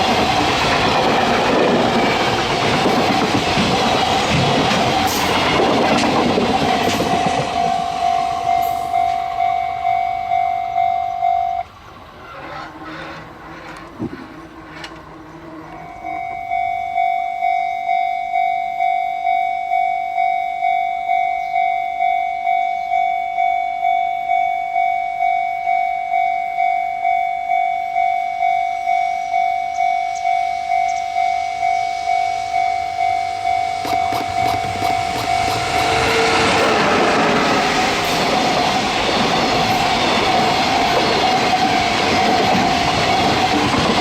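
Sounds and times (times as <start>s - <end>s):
level crossing alarm ringing: 0.0s - 11.8s, 14.5s - 44.0s
approaching train rumble: 0.0s - 17.1s, 28.4s - 44.0s.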